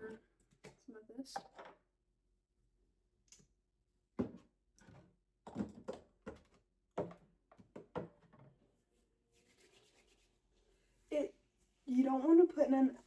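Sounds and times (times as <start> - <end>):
knocks and taps on plastic bottle: 4.2 - 4.5, 5.4 - 8.5.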